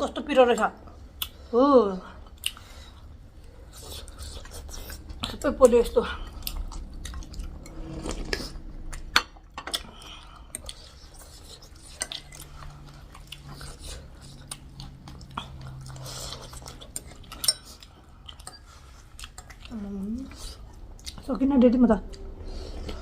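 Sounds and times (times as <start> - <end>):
faint low hum: 0.0 - 23.0
chewing: 2.2 - 21.4
cutlery clinking against dishes: 17.4 - 17.8.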